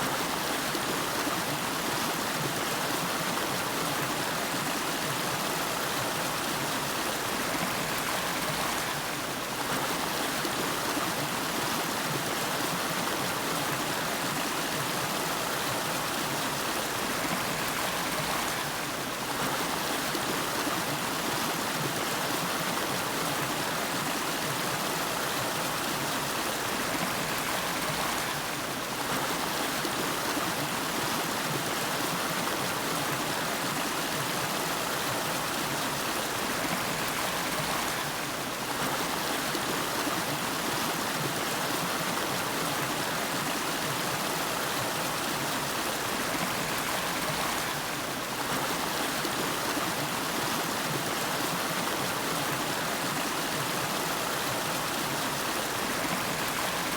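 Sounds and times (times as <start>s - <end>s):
river water flowing: 0.0s - 56.9s.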